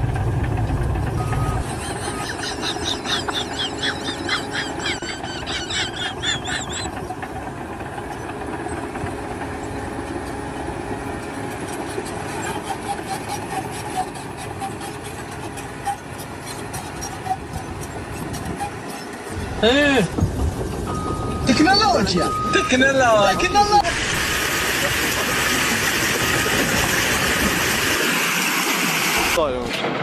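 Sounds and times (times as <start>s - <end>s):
engine running: 0.0s - 29.7s
high-pitched squeals: 0.1s - 7.0s, 20.9s - 24.2s.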